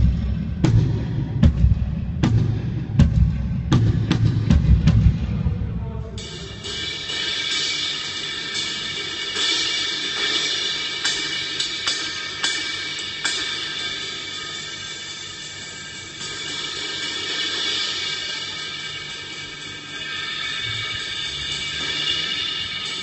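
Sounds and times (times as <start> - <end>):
bass drum hits: 0.0 - 6.6
cymbals ringing: 5.5 - 23.0.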